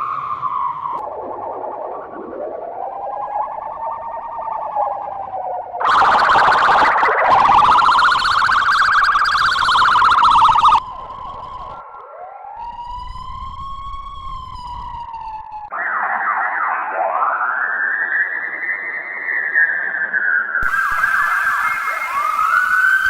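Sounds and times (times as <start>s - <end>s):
electronic siren wailing: 0.0s - 23.0s.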